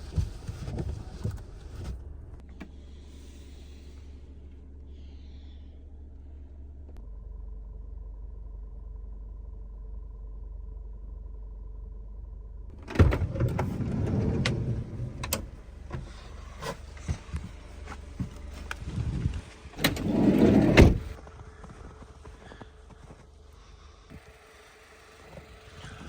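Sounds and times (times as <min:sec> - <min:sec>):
van door clunk and sliding: 0:12.7 - 0:21.2.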